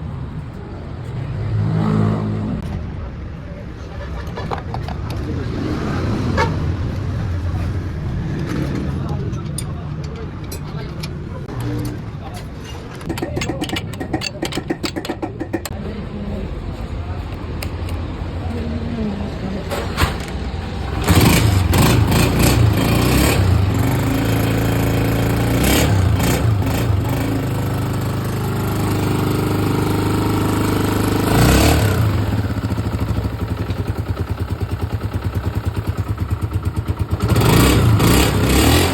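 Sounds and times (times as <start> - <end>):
motorcycle engine revving and idling: 13.0 - 16.0, 19.2 - 38.9.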